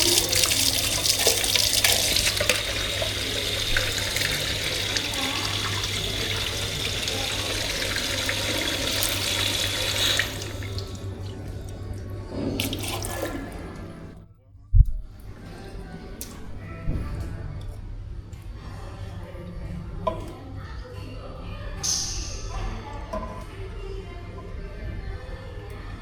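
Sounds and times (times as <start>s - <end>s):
tap water running into sink: 0.0s - 14.1s.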